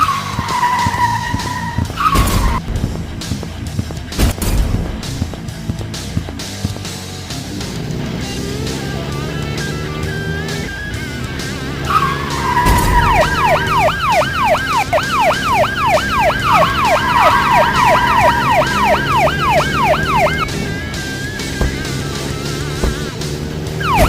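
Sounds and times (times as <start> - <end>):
police siren yelping: 11.9 - 22.0, 23.8 - 24.0.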